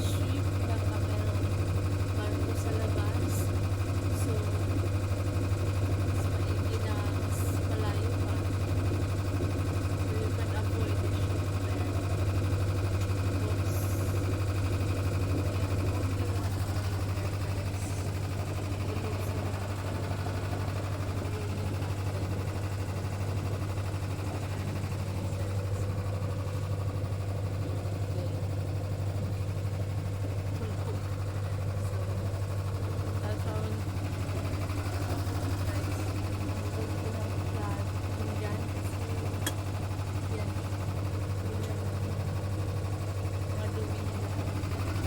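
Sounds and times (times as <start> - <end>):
boat engine humming: 0.0 - 45.0.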